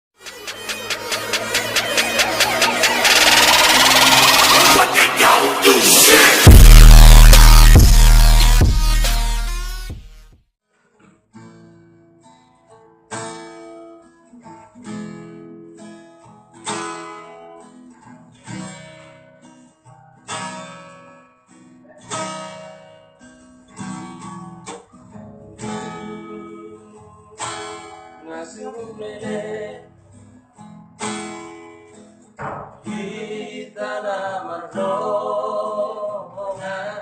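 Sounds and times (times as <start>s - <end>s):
acoustic guitar strummed: 0.2s - 10.2s, 10.9s - 28.2s
loud electronic sound: 0.2s - 10.2s.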